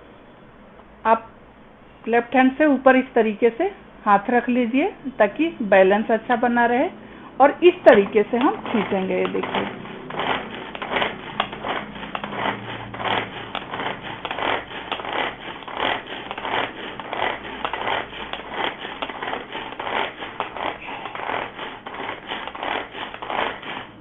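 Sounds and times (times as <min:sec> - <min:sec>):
pull-string chopper whirring: 0:07.8 - 0:24.0.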